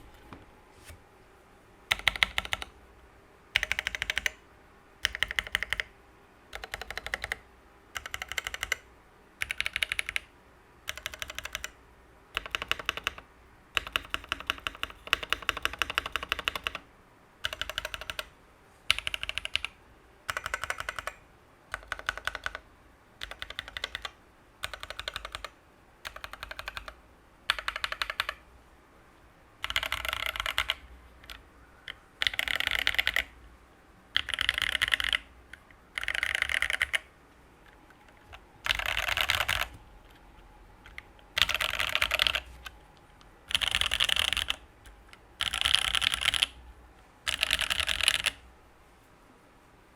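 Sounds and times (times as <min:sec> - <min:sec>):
mechanical keyboard typing: 0:01.9 - 0:02.8, 0:03.5 - 0:04.4, 0:05.0 - 0:05.9, 0:06.5 - 0:16.8, 0:17.4 - 0:18.3, 0:18.9 - 0:22.6, 0:23.2 - 0:28.4, 0:29.6 - 0:33.4, 0:34.1 - 0:40.2, 0:40.8 - 0:46.6, 0:47.2 - 0:48.4.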